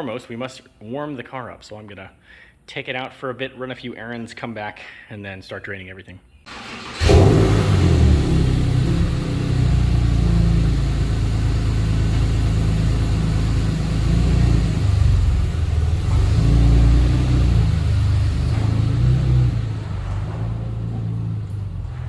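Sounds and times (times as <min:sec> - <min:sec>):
car engine revving while driving: 0:06.5 - 0:22.0.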